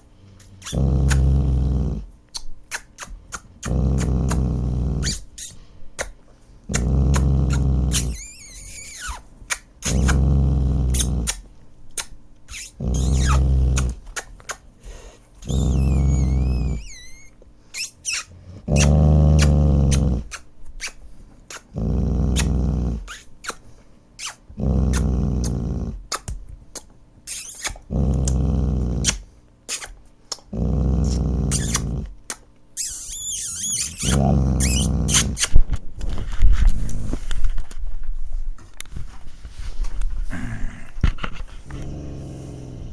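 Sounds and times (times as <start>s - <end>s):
dog growling: 0.3s - 2.2s, 3.2s - 5.6s, 6.7s - 11.5s, 12.5s - 14.2s, 15.4s - 17.3s, 18.1s - 20.5s, 21.6s - 23.5s, 24.2s - 26.3s, 27.3s - 29.4s, 30.4s - 37.5s, 40.0s - 42.9s
dog whining: 0.4s - 6.1s, 6.7s - 11.4s, 12.0s - 14.0s, 15.4s - 23.6s, 24.2s - 26.4s, 27.3s - 32.2s, 32.8s - 35.6s.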